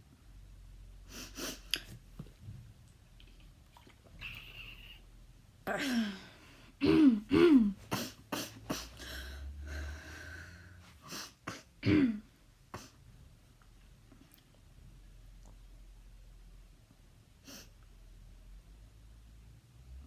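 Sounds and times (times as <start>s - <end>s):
person coughing harshly: 6.8s - 8.9s, 11.5s - 12.9s.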